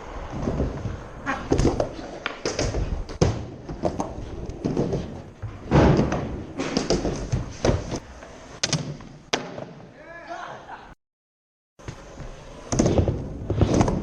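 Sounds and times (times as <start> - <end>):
skateboard rolling: 0.0 - 9.8, 11.8 - 14.0
skateboard clacks and thuds: 0.2 - 8.0, 11.8 - 14.0.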